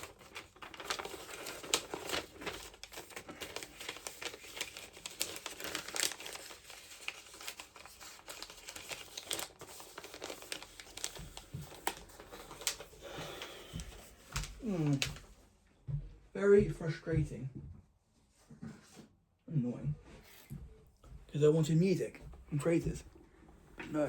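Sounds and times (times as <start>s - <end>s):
packaging crinkling and rustling: 0.0s - 15.4s.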